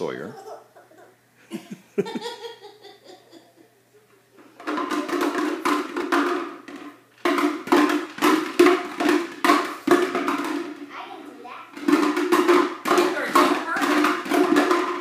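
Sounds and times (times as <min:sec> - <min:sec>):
fast repeated banging: 0:04.6 - 0:10.9, 0:11.7 - 0:15.0.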